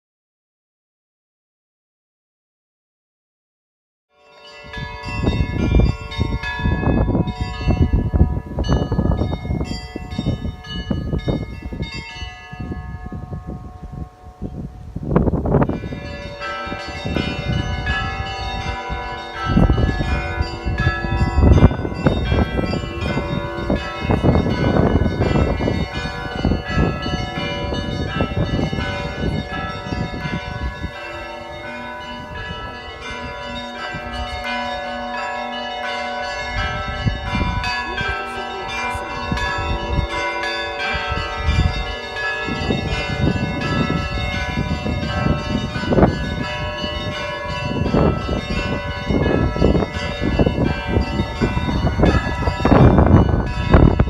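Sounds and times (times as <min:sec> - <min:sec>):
church bells pealing: 0:04.2 - 0:54.0.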